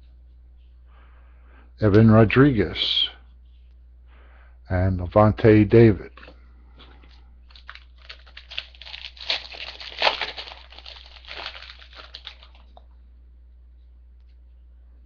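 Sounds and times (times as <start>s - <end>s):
foil wrapper tearing and crinkling: 7.5s - 12.8s.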